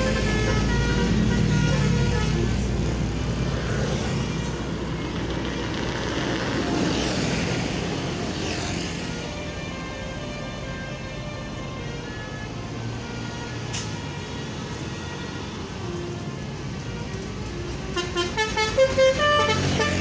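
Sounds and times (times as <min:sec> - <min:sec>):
multi-note bus horn tune: 0:00.0 - 0:03.4, 0:09.0 - 0:20.0
bus engine rumble: 0:00.0 - 0:20.0
road noise: 0:00.0 - 0:20.0.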